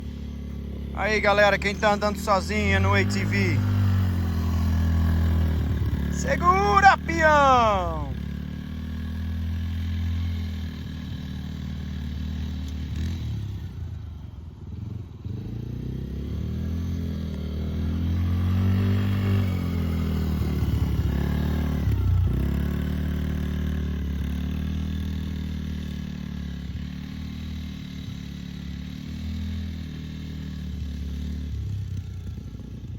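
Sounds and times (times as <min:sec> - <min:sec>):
small engine revving: 0:02.7 - 0:06.2.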